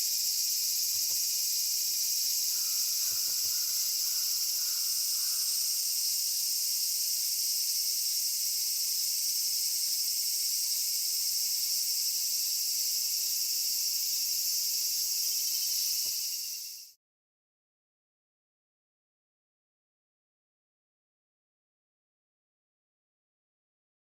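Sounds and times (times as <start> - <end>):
insects droning: 0.0 - 17.0.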